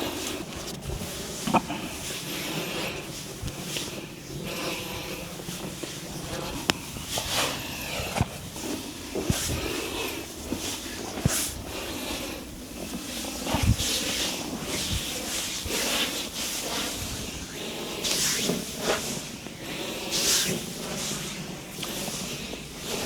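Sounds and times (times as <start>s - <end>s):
hands swishing over skin: 13.4s - 19.3s.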